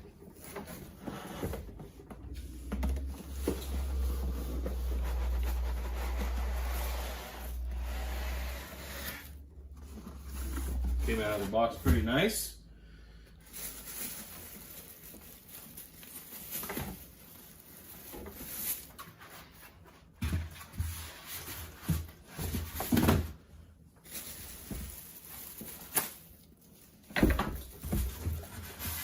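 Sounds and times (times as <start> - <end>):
packaging rustling: 13.4 - 19.8, 24.0 - 29.0.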